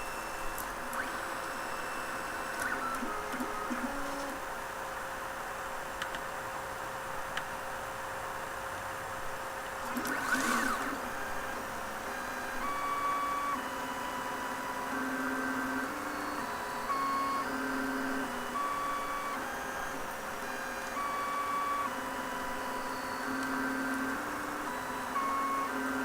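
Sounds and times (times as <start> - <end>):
stepper motors whining: 0.0 - 4.4, 9.8 - 26.0.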